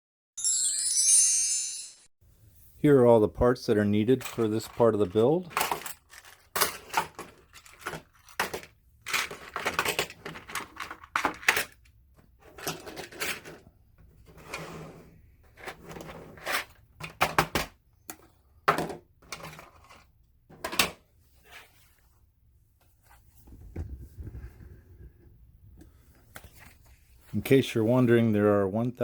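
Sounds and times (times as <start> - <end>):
plastic parts clicking and clattering: 4.1 - 14.4, 15.6 - 21.0.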